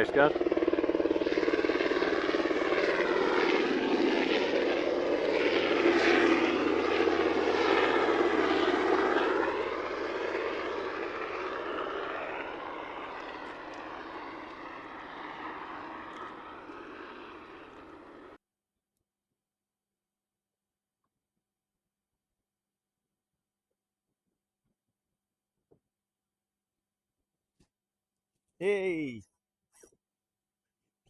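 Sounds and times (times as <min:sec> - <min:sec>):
low-flying propeller aircraft: 0:00.0 - 0:18.4.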